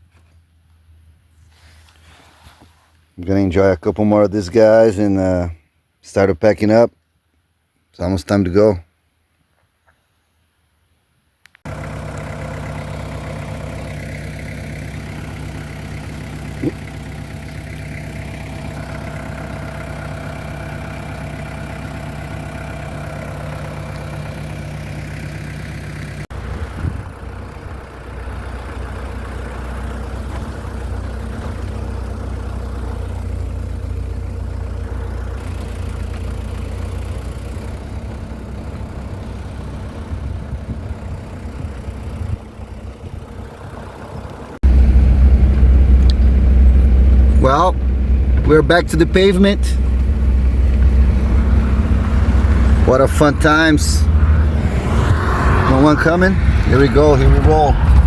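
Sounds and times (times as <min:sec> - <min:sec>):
vehicle engine droning: 0:11.7 - 0:58.0.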